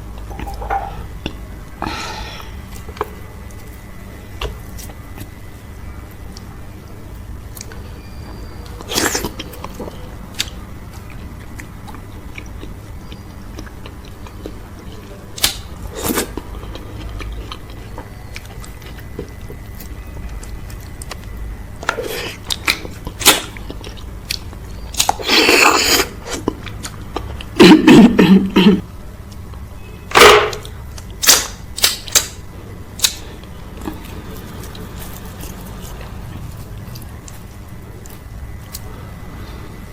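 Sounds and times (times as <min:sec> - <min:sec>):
close chewing and biting food: 0:08.4 - 0:27.6, 0:33.0 - 0:38.9.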